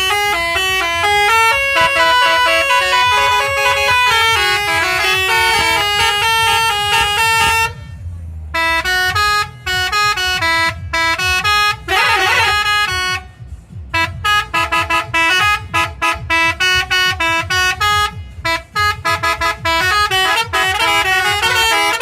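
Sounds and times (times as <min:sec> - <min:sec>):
musical bus horn tune: 0:00.0 - 0:22.0.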